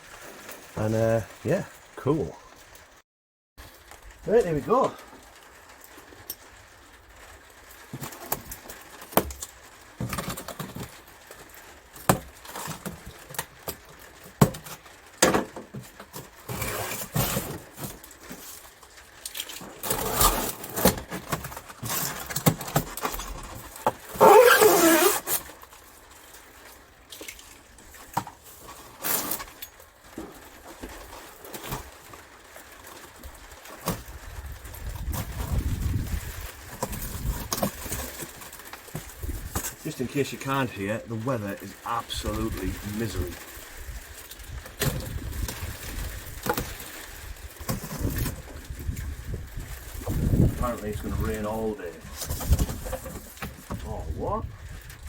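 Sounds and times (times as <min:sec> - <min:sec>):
cardboard packaging being opened: 0:07.5 - 0:55.0
squeaky scrape: 0:16.5 - 0:17.8, 0:19.6 - 0:22.4, 0:23.0 - 0:25.5.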